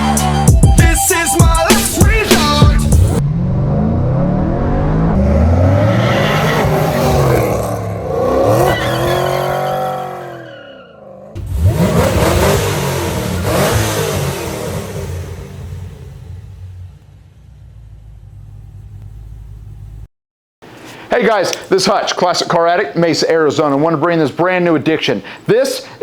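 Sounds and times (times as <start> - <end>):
car engine revving: 1.8 - 20.1.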